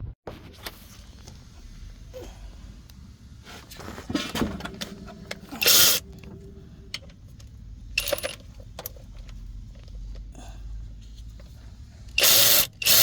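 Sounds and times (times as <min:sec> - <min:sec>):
hand tools clicking on engine parts: 0:04.6 - 0:10.3, 0:11.4 - 0:13.0
loud rasping burst: 0:05.5 - 0:06.0, 0:12.2 - 0:13.0.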